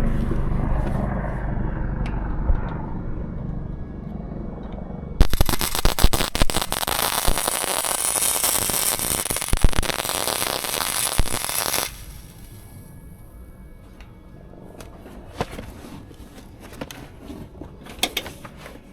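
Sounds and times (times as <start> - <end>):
welding arc crackling with pops: 5.2 - 12.8.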